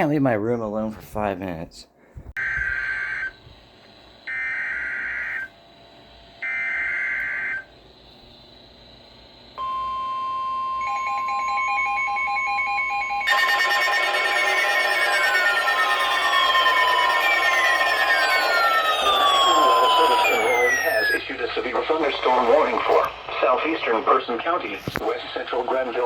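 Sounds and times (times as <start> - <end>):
pulsing alarm beeps: 2.4 - 3.4, 4.3 - 5.5, 6.4 - 7.7, 9.6 - 23.2
steady warning alarm tone: 2.4 - 3.6, 4.2 - 5.6, 6.4 - 7.8, 9.6 - 26.0
alarm with falling whistling sweeps: 9.6 - 23.0
warbling data bursts: 12.6 - 26.0.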